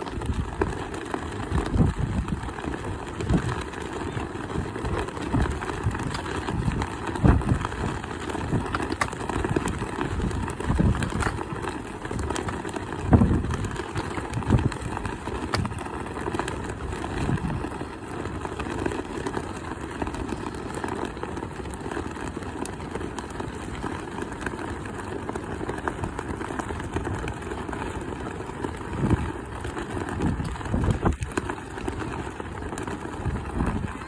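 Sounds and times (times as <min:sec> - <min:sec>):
wind buffeting microphone: 0:00.0 - 0:17.8, 0:28.8 - 0:34.0.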